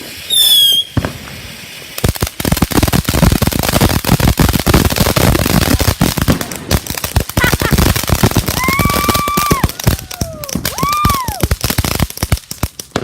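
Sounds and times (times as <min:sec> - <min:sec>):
rapid firework pops and bangs: 0:00.0 - 0:13.0
firework falling whistle: 0:00.3 - 0:01.2, 0:08.5 - 0:11.4.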